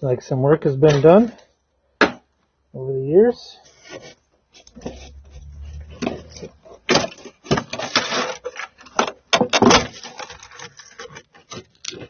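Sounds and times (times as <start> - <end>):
brittle material crackling and snapping: 6.0 - 12.0.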